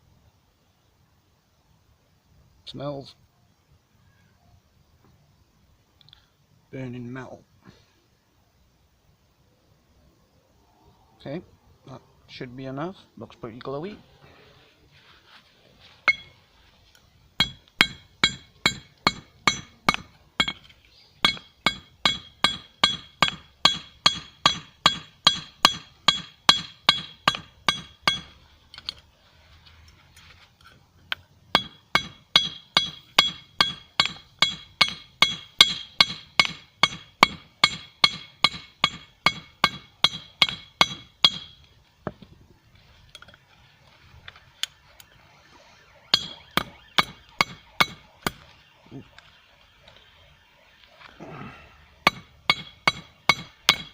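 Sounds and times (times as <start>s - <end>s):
hammer striking hot metal on anvil: 16.1s - 16.4s, 17.4s - 28.4s, 31.6s - 41.6s, 46.1s - 48.5s, 52.0s - 53.9s.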